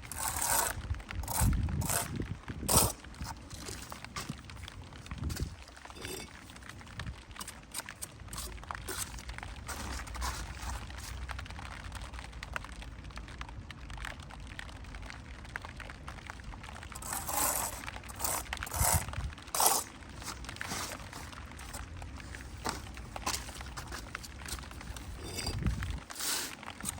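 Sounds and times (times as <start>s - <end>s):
trowel scraping bricks and mortar: 0.0s - 6.7s, 7.4s - 11.2s, 17.0s - 26.9s.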